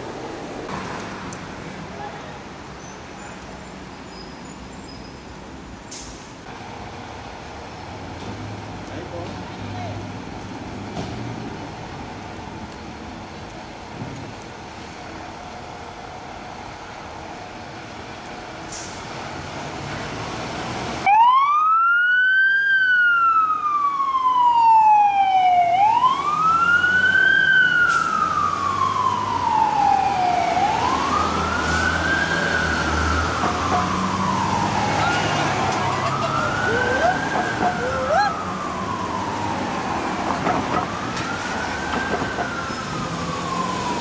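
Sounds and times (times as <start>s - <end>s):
fire engine siren wailing: 21.0s - 44.0s.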